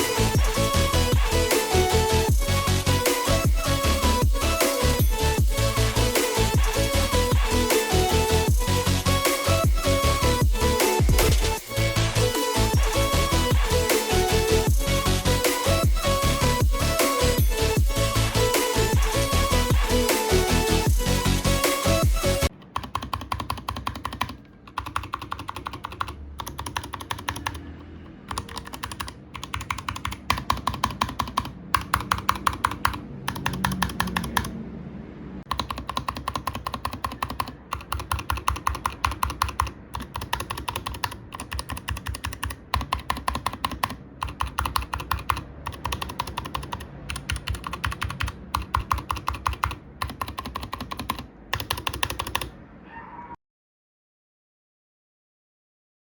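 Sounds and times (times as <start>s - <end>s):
fast typing on mechanical keyboard: 22.5s - 34.6s, 35.5s - 52.5s.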